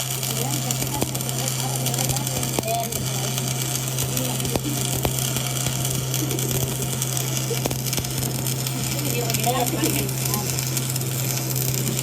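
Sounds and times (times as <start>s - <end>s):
arc welding crackling hiss: 0.0s - 12.0s
sharp clicks: 0.0s - 12.0s
steady electrical hum: 0.0s - 12.0s.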